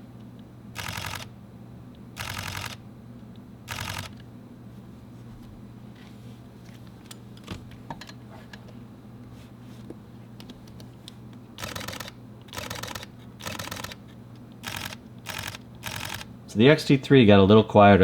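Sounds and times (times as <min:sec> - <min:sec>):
camera shutter clicks: 0:00.8 - 0:01.3, 0:02.2 - 0:02.8, 0:03.7 - 0:04.2, 0:11.6 - 0:14.0, 0:14.6 - 0:16.3.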